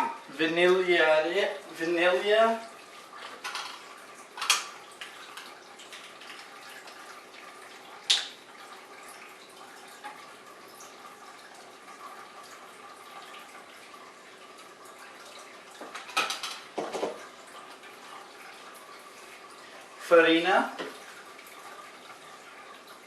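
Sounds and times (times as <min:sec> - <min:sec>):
dishes and utensils clinking: 0:00.0 - 0:00.2, 0:03.3 - 0:03.8, 0:15.9 - 0:17.2.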